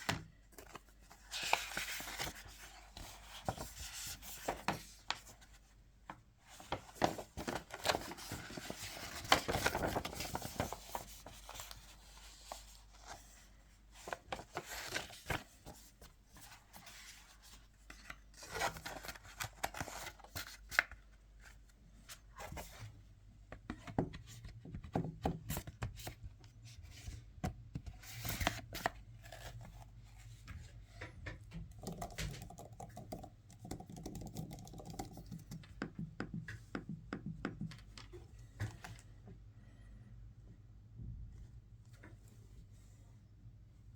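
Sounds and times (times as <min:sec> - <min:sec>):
taps and clicks: 0:31.3 - 0:38.2.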